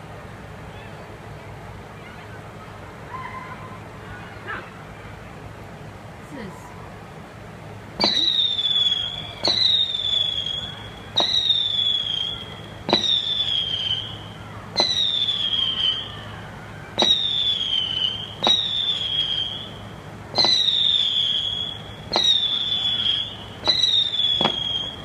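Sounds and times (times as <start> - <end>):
fireworks bangs: 8.0 - 16.3, 16.9 - 25.0
falling firework whistle: 8.0 - 25.0.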